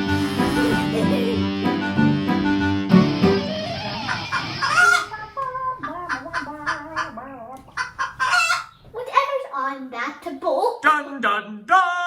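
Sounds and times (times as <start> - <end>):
music: 0.0 - 6.4
chicken clucking: 3.7 - 8.9.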